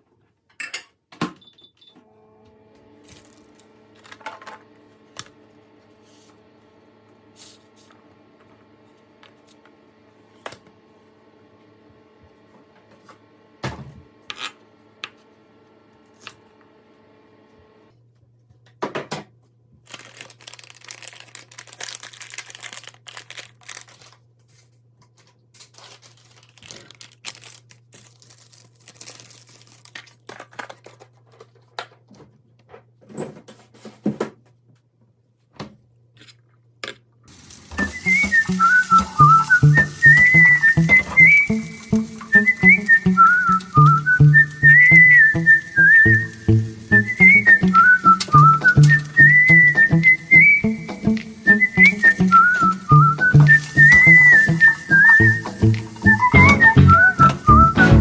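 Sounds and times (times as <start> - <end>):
plastic packaging tearing and crinkling: 19.8 - 24.6, 25.6 - 31.6.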